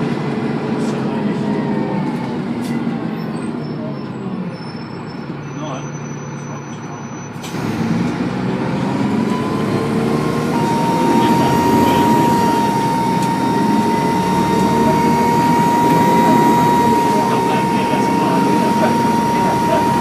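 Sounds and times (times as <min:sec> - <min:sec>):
bus engine pulling hard: 0:00.0 - 0:20.0
high turbo whine: 0:07.4 - 0:20.0.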